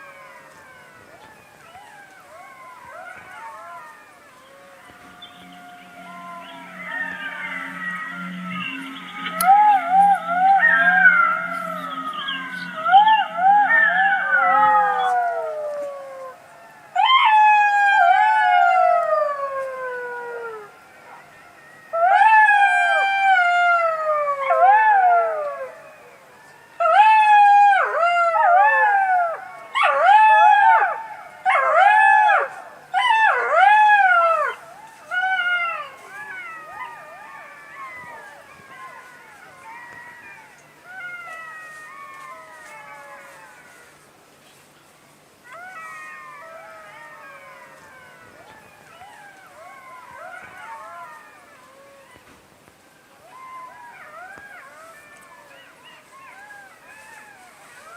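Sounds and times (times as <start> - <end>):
jackals yipping: 0.0 - 16.5, 32.5 - 44.6, 45.4 - 52.4, 53.2 - 57.9
jackals howling: 0.0 - 44.7, 45.4 - 57.9.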